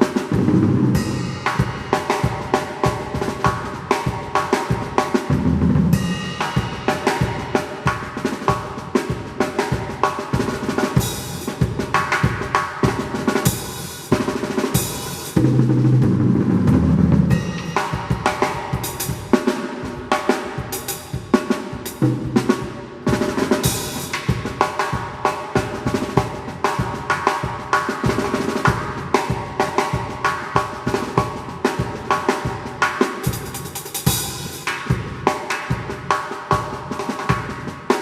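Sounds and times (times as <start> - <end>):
low tom fills: 0.0 - 29.4
drum kit playing fast groove: 0.0 - 38.0.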